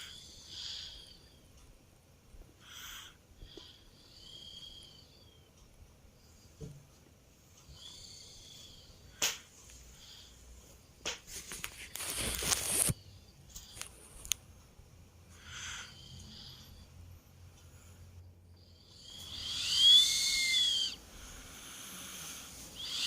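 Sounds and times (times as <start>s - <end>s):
toddler breathing and snoring: 15.3s - 16.9s, 18.8s - 23.0s
faint whistling tone: 19.1s - 21.0s, 22.8s - 23.0s.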